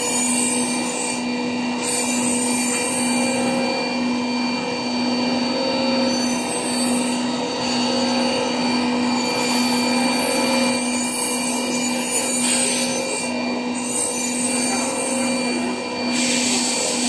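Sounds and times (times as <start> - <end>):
milling machine whine: 0.0 - 17.0
cutting noise: 5.4 - 17.0.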